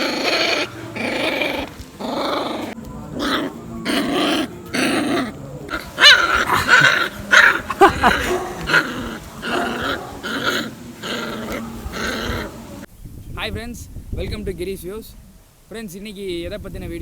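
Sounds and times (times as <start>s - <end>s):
puppies growling: 0.0s - 12.9s
puppies yelping: 0.0s - 12.9s.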